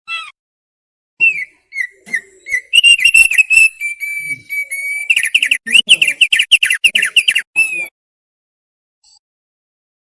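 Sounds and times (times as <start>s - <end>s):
bird whistling song: 1.2s - 7.9s.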